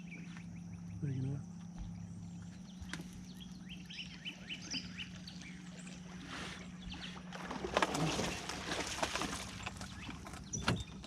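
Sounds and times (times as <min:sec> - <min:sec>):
boat motor humming: 0:00.0 - 0:11.0
water splashing: 0:05.0 - 0:10.4.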